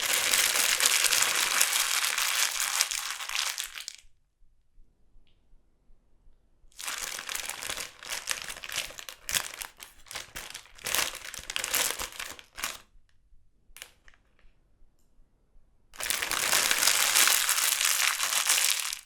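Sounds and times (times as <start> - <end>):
chip bag crinkling: 0.0 - 4.0, 6.8 - 12.8, 16.0 - 19.0.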